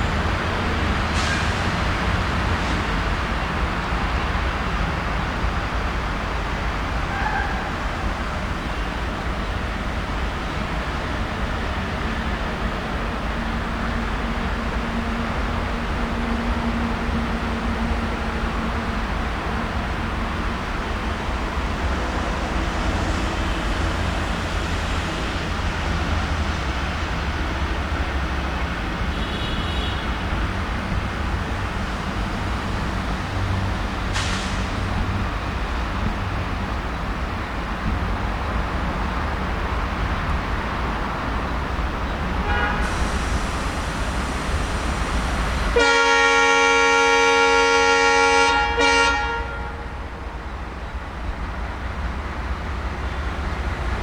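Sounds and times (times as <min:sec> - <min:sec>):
diesel locomotive engine rumble: 0:00.0 - 0:54.0
multi-tone air horn: 0:42.4 - 0:43.2, 0:45.8 - 0:50.0.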